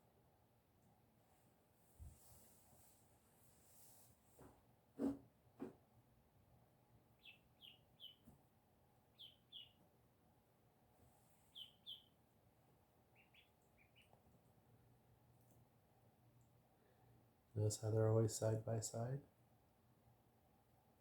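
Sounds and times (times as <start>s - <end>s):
ducklings peeping: 7.1s - 8.3s, 9.1s - 9.8s, 11.4s - 12.3s, 13.0s - 14.3s.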